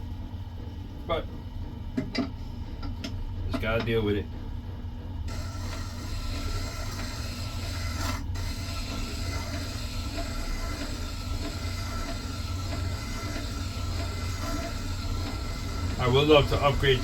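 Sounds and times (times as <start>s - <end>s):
chisel grinding on wet stone: 5.3s - 16.2s
sharpener motor humming: 5.3s - 17.0s.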